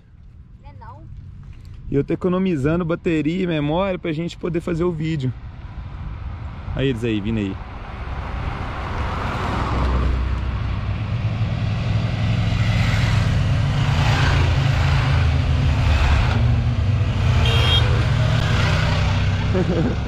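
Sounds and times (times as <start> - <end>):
motorcycles riding past: 8.0 - 20.0.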